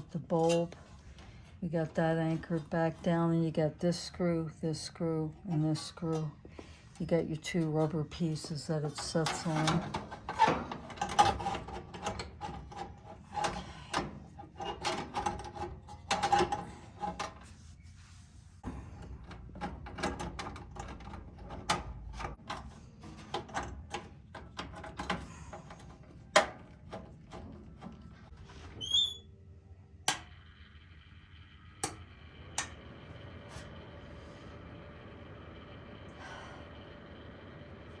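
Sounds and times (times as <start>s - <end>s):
parts clicking and knocking: 8.3s - 17.4s, 18.6s - 28.3s.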